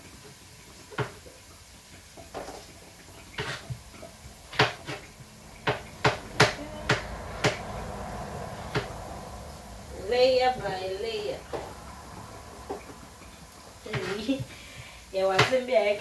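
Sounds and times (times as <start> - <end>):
knife cutting on chopping board: 3.4 - 3.8, 4.5 - 5.1.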